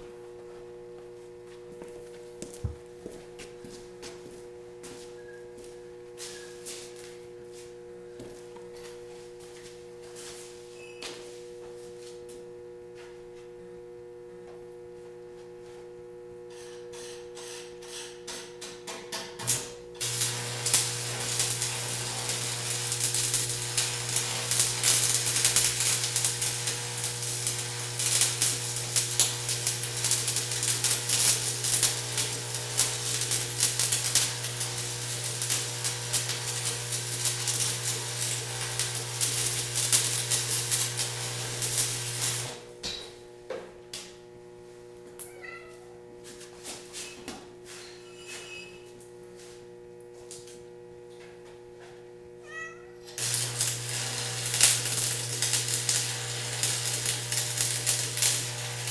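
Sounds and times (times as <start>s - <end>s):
welding arc crackling: 19.4s - 42.7s, 53.2s - 58.9s
welding machine hum: 19.4s - 42.8s, 53.2s - 58.9s.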